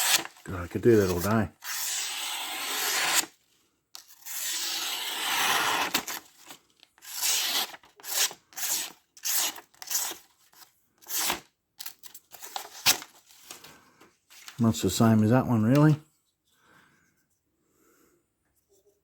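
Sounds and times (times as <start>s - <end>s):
knife slicing through paper: 0.0s - 3.3s, 4.0s - 11.4s.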